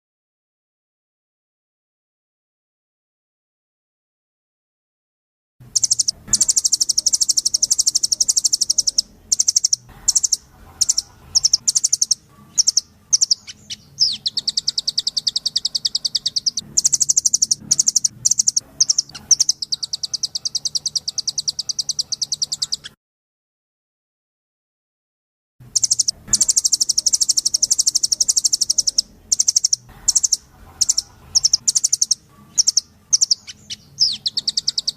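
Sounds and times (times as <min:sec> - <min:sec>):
songbird trilling and chirping: 0:05.7 - 0:23.0, 0:25.7 - 0:34.9.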